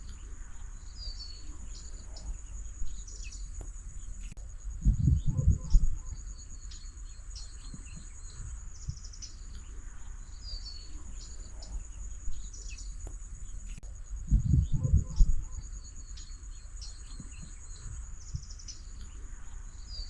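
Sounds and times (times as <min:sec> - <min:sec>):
birds chirping: 0:00.0 - 0:20.0
insects trilling: 0:00.0 - 0:20.0
low thumps: 0:02.1 - 0:06.4, 0:11.0 - 0:15.8.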